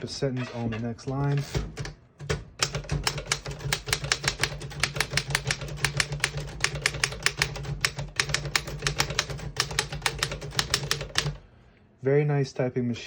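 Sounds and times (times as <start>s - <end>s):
manual typewriter typing: 1.2s - 11.4s.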